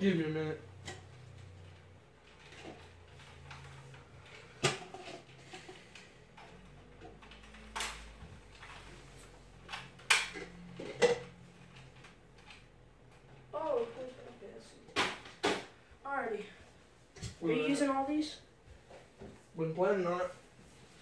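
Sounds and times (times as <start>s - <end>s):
cups knocking and clattering: 2.4s - 7.9s, 9.7s - 12.4s.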